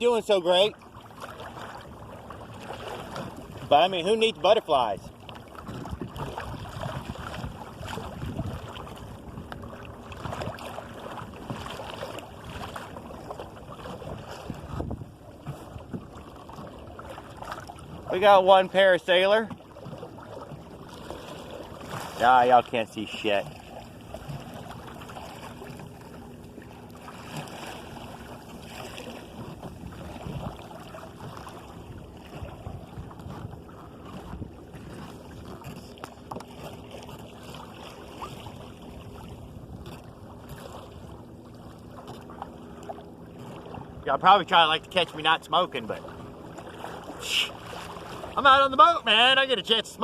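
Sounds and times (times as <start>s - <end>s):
water splashing against hull: 0.0s - 50.0s
wind buffeting microphone: 5.6s - 10.6s, 13.9s - 16.2s, 29.3s - 35.8s
wind noise: 5.7s - 8.7s, 14.3s - 15.2s.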